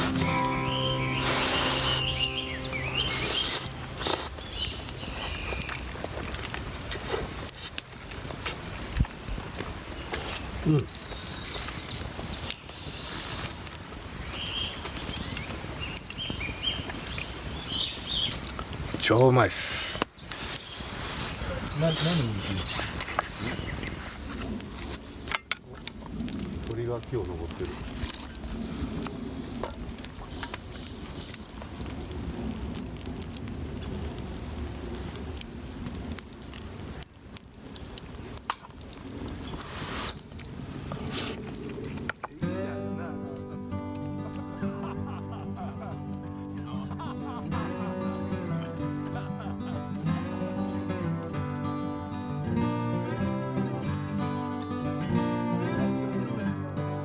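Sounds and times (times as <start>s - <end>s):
high chirping bird calls: 0.0s - 5.8s
bird chirping: 0.0s - 6.1s, 10.0s - 19.2s, 19.9s - 24.4s
outdoor background: 0.0s - 57.0s
sharp crackles: 0.0s - 57.0s.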